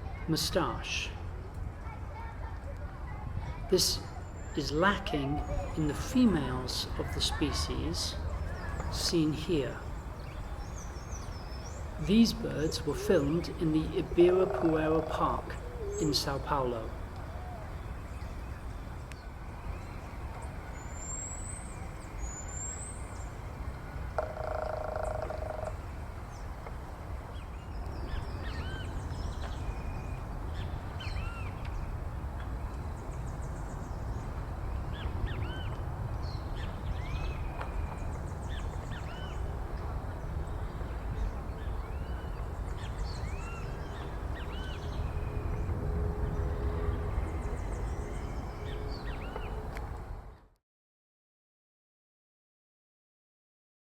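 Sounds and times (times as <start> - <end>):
small birds chirping: 3.4 - 49.6.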